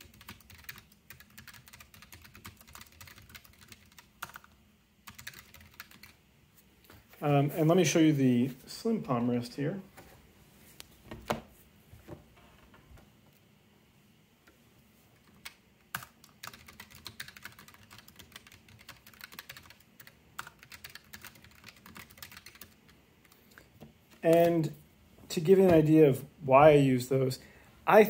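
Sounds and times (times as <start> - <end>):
typing on mechanical keyboard: 0.0 - 6.2, 15.2 - 23.7.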